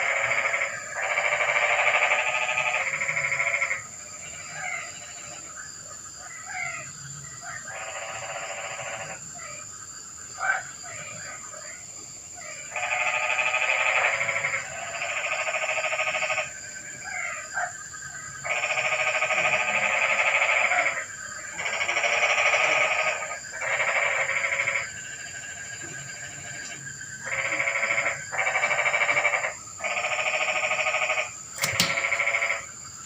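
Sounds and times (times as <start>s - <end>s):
frogs trilling: 0.0s - 33.0s
short frog chirps: 18.4s - 33.0s.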